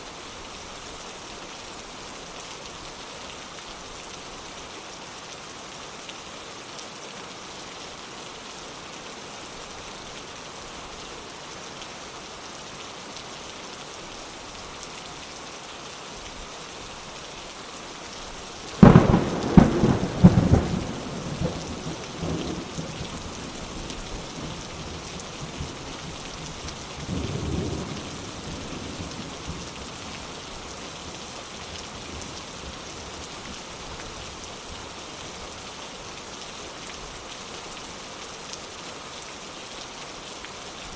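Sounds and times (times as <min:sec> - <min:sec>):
steady rain: 0:00.0 - 0:40.9
thunder rolling: 0:18.8 - 0:21.6.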